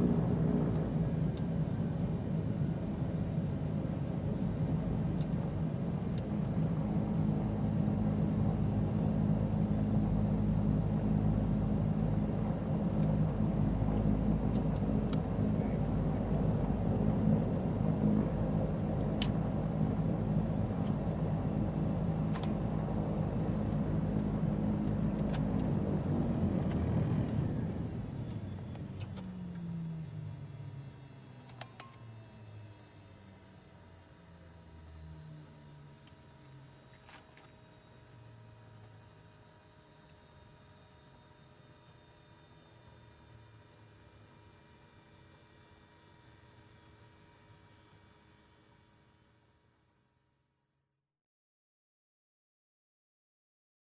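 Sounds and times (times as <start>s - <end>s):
turboprop engines running: 0.0s - 49.9s.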